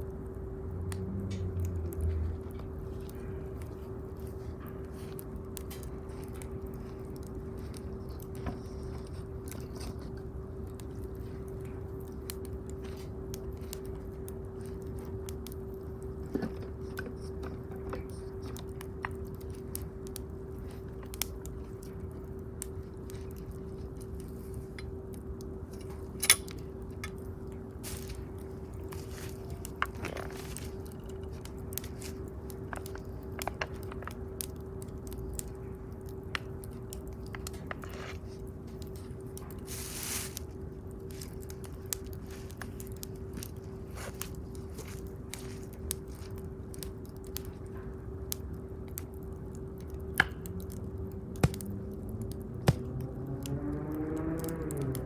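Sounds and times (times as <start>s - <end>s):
bonfire crackling and popping: 0.0s - 55.0s
steady low hum: 0.0s - 55.0s.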